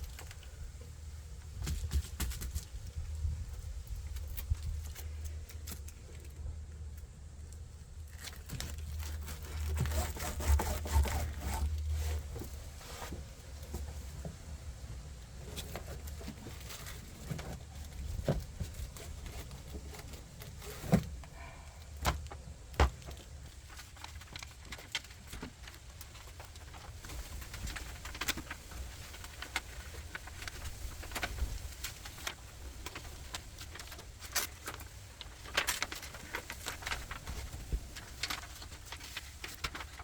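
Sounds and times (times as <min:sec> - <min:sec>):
paper rustling and crinkling: 0:08.0 - 0:14.3, 0:15.3 - 0:40.0.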